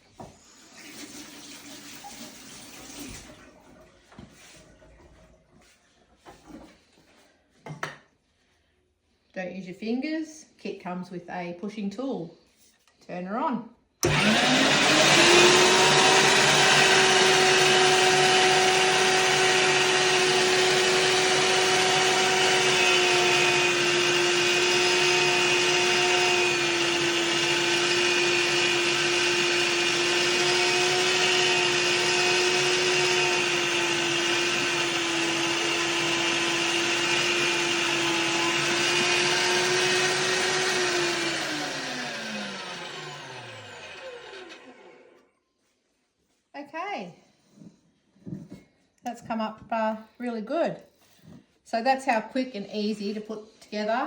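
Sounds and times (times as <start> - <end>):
electric meat grinder humming: 14.0 - 45.2.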